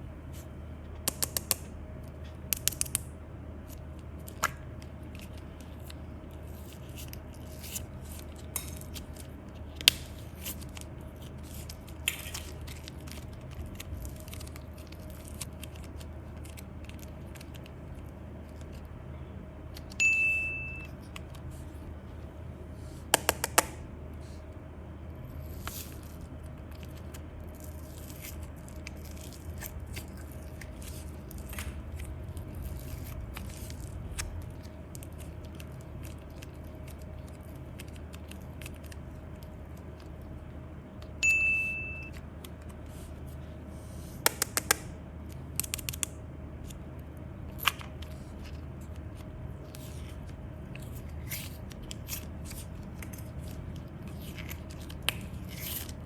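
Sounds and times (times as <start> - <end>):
steady low hum: 0.0 - 56.0
clicks snips and scrapes: 1.0 - 1.6, 44.2 - 44.9, 45.6 - 46.1, 49.2 - 56.0.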